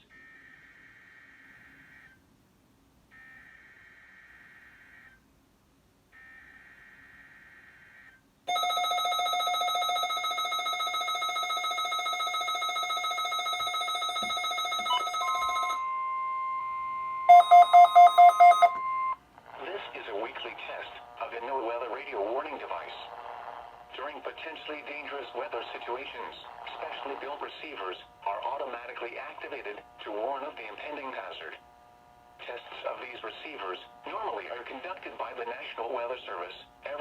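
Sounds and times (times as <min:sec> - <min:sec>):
fluttering electronic alert tone: 0:08.5 - 0:15.9, 0:17.2 - 0:19.2
fast loud beeps: 0:08.5 - 0:19.2
steady single tone: 0:09.8 - 0:19.2
digital header data bursts: 0:17.3 - 0:19.2.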